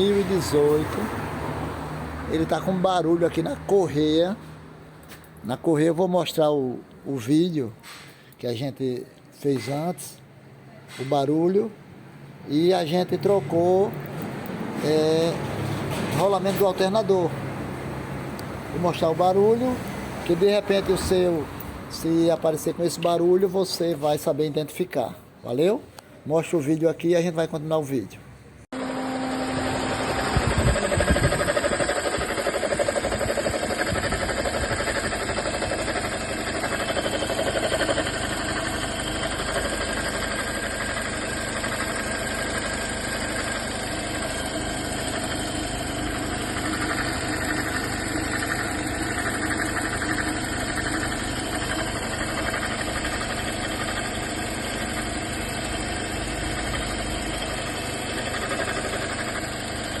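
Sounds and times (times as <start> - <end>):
car engine idling: 30.4 - 60.0.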